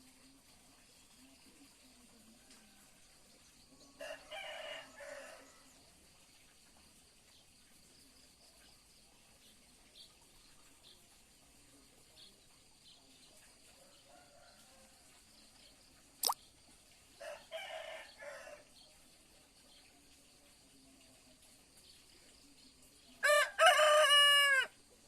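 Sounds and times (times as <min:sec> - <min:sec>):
rooster crowing: 0:23.2 - 0:24.7.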